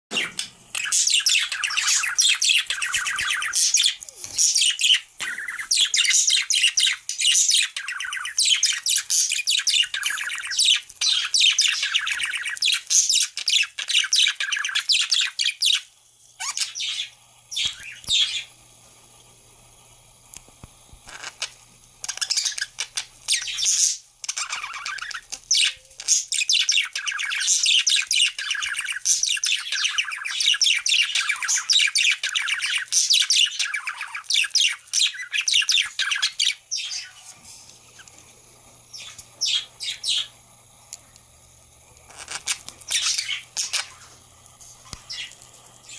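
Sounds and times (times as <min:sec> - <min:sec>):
budgerigars chattering and warbling: 0:00.1 - 0:15.8, 0:22.0 - 0:37.3, 0:39.0 - 0:40.3, 0:42.1 - 0:44.1.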